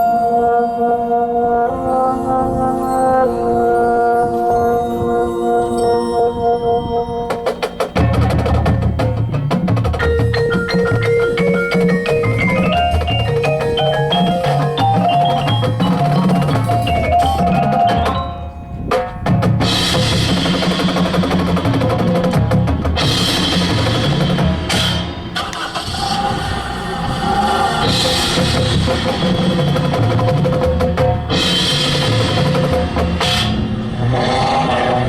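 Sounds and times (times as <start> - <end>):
marimba and glockenspiel melody: 0.0 - 21.0
loud cymbals: 0.0 - 34.6
bass drums and tenor drums: 7.3 - 25.4, 27.8 - 34.0.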